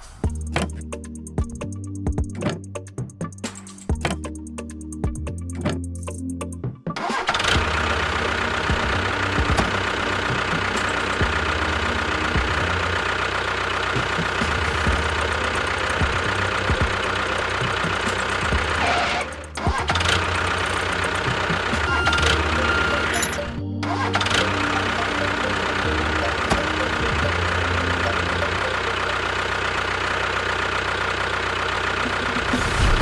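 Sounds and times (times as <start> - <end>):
small motor running: 7.2 - 32.9.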